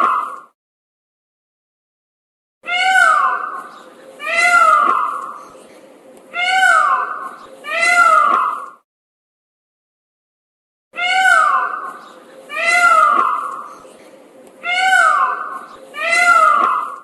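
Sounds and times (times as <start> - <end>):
cat meowing: 2.6 - 3.6, 11.0 - 11.8, 14.6 - 16.6.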